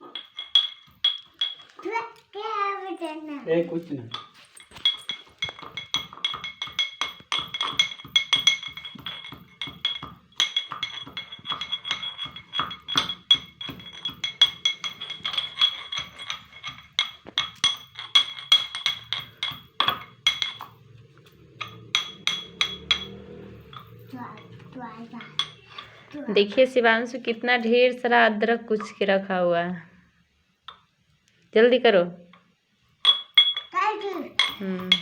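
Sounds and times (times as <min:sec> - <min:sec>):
metal pestle pounding in steel mortar: 0:04.1 - 0:25.8.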